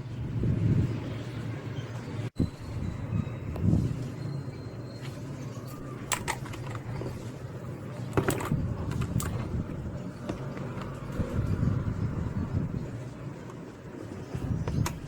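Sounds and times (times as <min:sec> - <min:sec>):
keyboard plastic clicks and knocks: 0:08.0 - 0:11.3.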